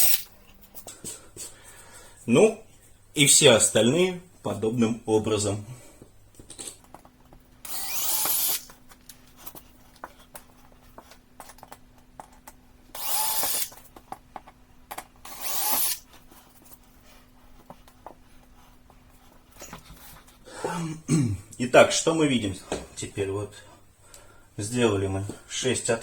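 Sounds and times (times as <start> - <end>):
power drill boring into wood: 0.0 - 0.3, 7.6 - 8.7, 13.0 - 13.7, 15.2 - 16.0.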